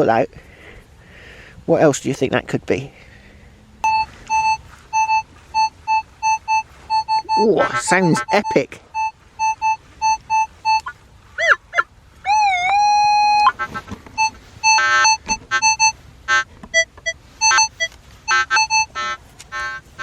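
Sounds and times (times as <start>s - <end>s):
metal detector beeps: 3.8s - 11.6s, 12.3s - 20.0s
swooping electronic tone: 3.8s - 19.7s.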